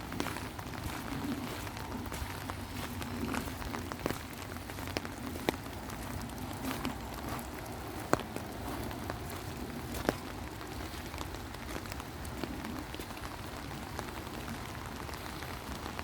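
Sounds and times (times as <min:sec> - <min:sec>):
raindrops tapping close by: 0:00.0 - 0:16.0
steady rain: 0:00.0 - 0:16.0.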